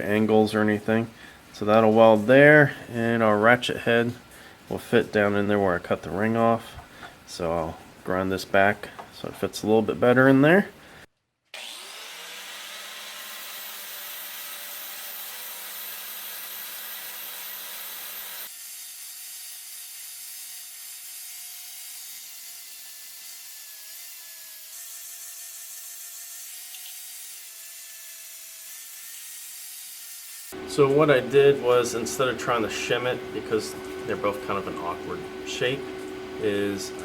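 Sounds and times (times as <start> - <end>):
electric grinder grinding steel: 11.6 - 37.0.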